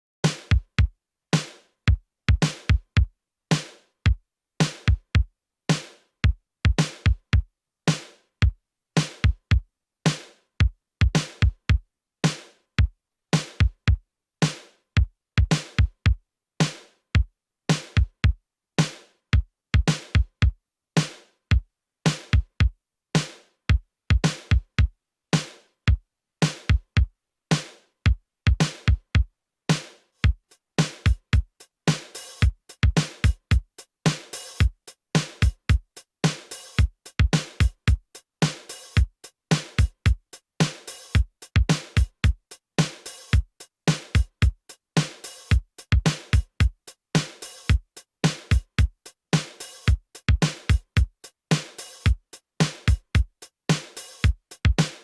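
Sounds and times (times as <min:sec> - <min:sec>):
kick drums: 0:00.5 - 0:01.0, 0:01.9 - 0:03.1, 0:06.2 - 0:07.5, 0:09.2 - 0:09.6, 0:11.0 - 0:11.8, 0:13.6 - 0:14.0, 0:15.4 - 0:16.2, 0:19.4 - 0:20.6, 0:22.4 - 0:22.7, 0:23.7 - 0:24.9, 0:26.7 - 0:27.1, 0:28.1 - 0:29.3, 0:31.1 - 0:31.5, 0:32.4 - 0:33.7, 0:35.4 - 0:36.0, 0:36.8 - 0:38.1, 0:39.0 - 0:40.3, 0:41.2 - 0:42.4, 0:44.2 - 0:44.6, 0:45.5 - 0:46.8, 0:48.5 - 0:49.0, 0:49.9 - 0:51.2, 0:52.9 - 0:53.4, 0:54.2 - 0:54.9
snare hits: 0:30.8 - 0:31.2, 0:31.9 - 0:33.4, 0:34.1 - 0:35.6, 0:36.2 - 0:37.7, 0:38.4 - 0:39.9, 0:40.6 - 0:42.1, 0:42.8 - 0:44.3, 0:45.0 - 0:46.4, 0:47.2 - 0:48.6, 0:49.4 - 0:50.8, 0:51.5 - 0:53.0, 0:53.7 - 0:55.0.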